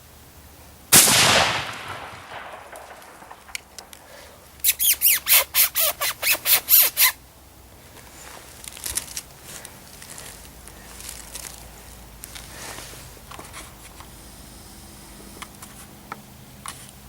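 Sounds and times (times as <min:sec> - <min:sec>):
faint rustling: 0:01.7 - 0:17.0
predator call high squeals: 0:04.6 - 0:07.2.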